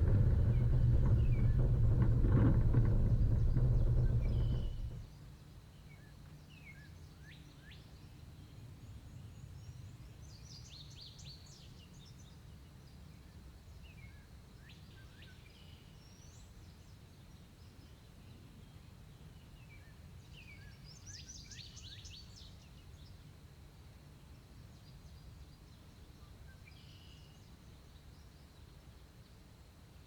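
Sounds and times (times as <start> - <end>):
low hum: 0.0 - 5.0
vehicle engine cutting off: 0.0 - 5.0.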